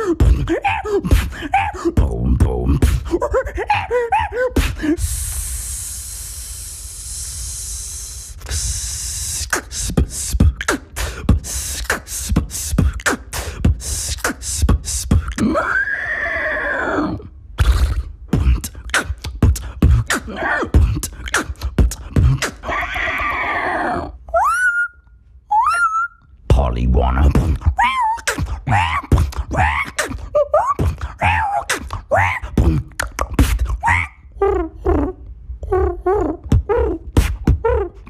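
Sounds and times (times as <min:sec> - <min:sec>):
beatboxing kick and snare: 0:00.0 - 0:03.2, 0:04.6 - 0:15.5, 0:17.6 - 0:22.7, 0:27.2 - 0:34.1, 0:35.8 - 0:38.0
breathy vocal hiss: 0:04.6 - 0:15.5
vocal horse whinny imitation: 0:15.4 - 0:17.3, 0:22.4 - 0:24.9.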